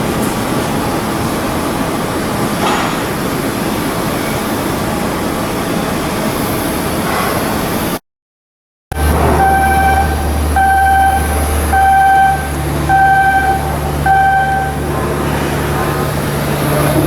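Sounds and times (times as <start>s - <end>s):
electronic warning beeps: 8.9s - 15.0s
low machinery hum: 8.9s - 17.0s.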